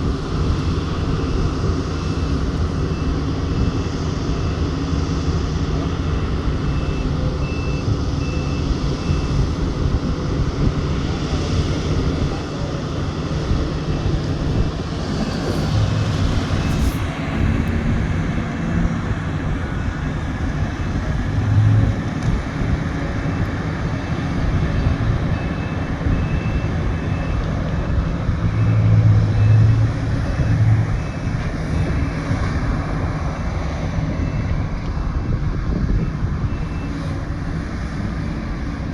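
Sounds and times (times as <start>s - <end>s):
heavy diesel engines running: 0.0s - 38.9s
backup alarm beeping: 12.2s - 19.8s.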